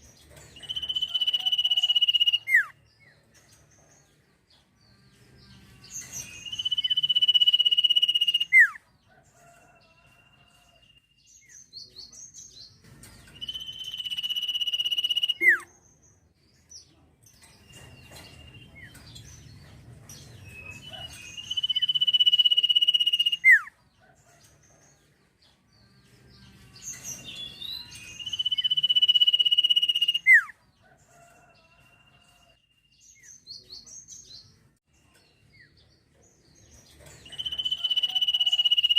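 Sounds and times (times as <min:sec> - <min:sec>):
songbird whistling phrases: 0:00.6 - 0:02.7, 0:06.2 - 0:08.8, 0:13.3 - 0:15.7, 0:20.6 - 0:23.7, 0:27.5 - 0:30.5, 0:37.3 - 0:38.9.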